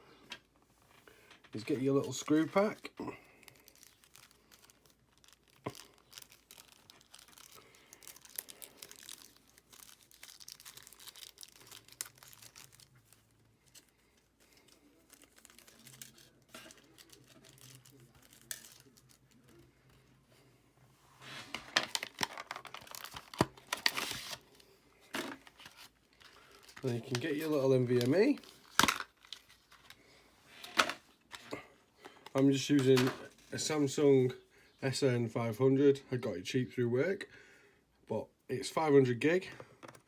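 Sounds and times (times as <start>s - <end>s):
plastic packet crinkling: 1.6s - 19.7s, 21.5s - 30.0s.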